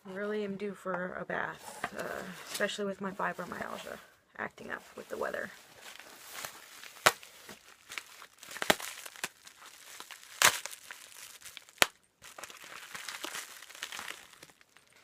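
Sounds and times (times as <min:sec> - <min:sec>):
packaging crinkling: 0:05.6 - 0:15.0.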